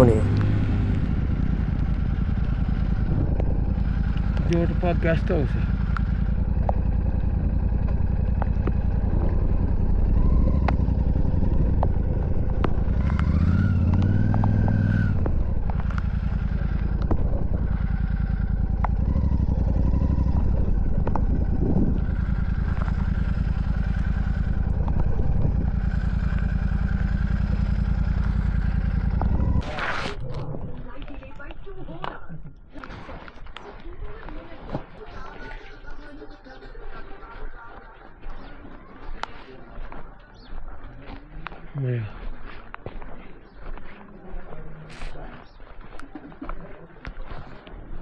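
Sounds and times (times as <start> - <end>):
motorcycle engine running: 0.0 - 48.0
sharp ticks: 0.3 - 29.6.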